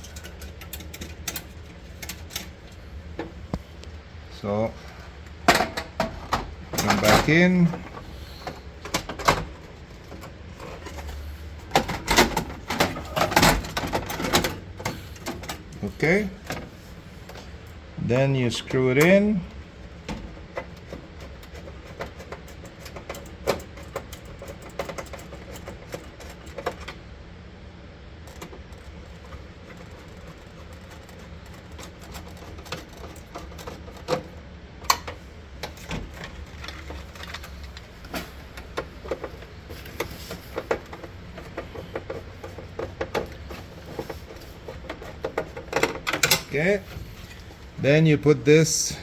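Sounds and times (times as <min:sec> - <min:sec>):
metal clicks and rattles of screws: 0:00.0 - 0:02.8, 0:20.0 - 0:27.0, 0:28.3 - 0:46.6
steady low hum: 0:00.0 - 0:49.0.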